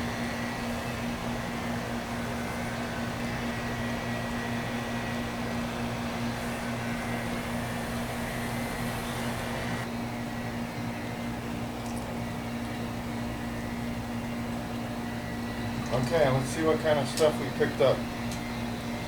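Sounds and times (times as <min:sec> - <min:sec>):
electric motor humming: 0:00.0 - 0:09.9
hiss: 0:06.3 - 0:09.8.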